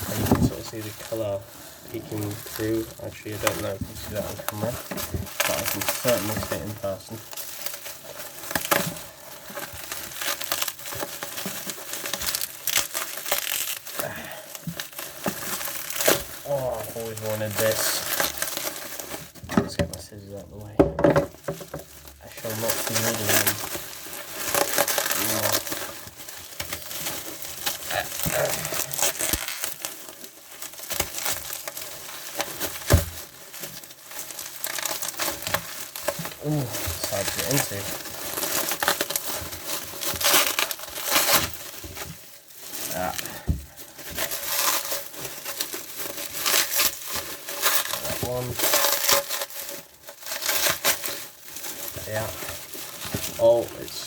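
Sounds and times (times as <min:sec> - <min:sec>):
bubble wrap crinkling: 0:00.0 - 0:54.0
knocks and thump: 0:20.8 - 0:21.9.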